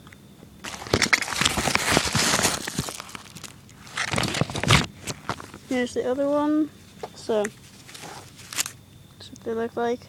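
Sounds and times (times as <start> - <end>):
packaging rustling and crinkling: 0.6 - 5.8, 7.6 - 8.8.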